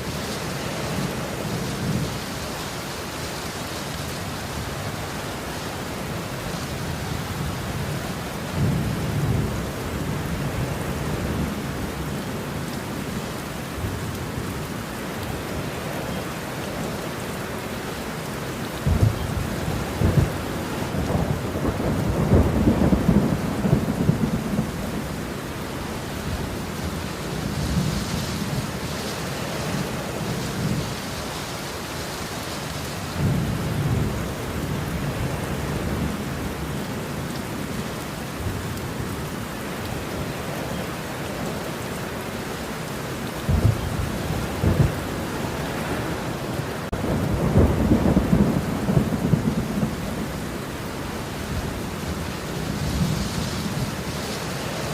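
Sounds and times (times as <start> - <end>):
steady rain: 0.0 - 54.9
thunder rumbling: 18.7 - 31.2, 32.8 - 39.3, 43.4 - 54.9.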